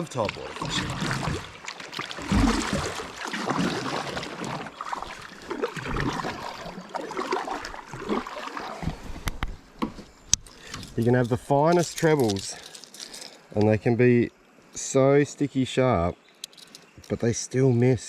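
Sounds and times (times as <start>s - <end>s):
water splashing and trickling: 0.0s - 9.7s, 10.4s - 13.8s.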